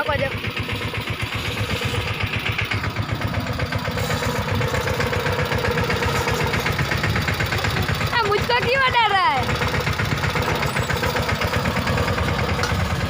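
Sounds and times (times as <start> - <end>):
tractor diesel engine running: 0.0 - 13.0.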